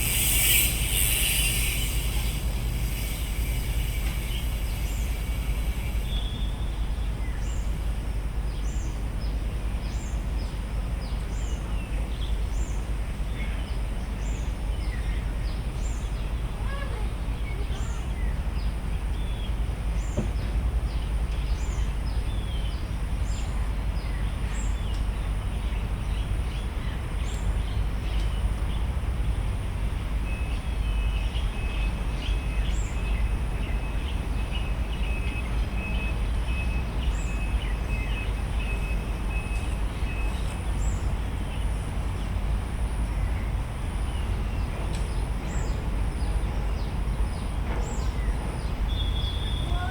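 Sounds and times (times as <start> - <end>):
birds chirping: 0.0 - 6.6
steady low rumble: 0.0 - 6.8.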